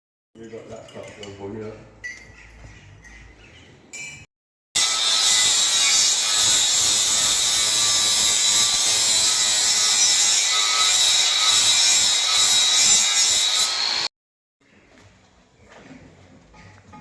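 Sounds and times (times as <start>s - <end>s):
power tool cutting sheet steel: 4.8s - 14.1s.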